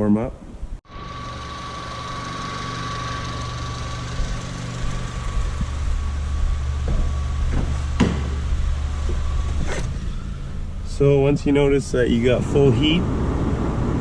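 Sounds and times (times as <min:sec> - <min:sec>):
steady high tone: 0:00.9 - 0:12.9
car engine idling: 0:00.9 - 0:13.0
short knocks: 0:06.8 - 0:09.9.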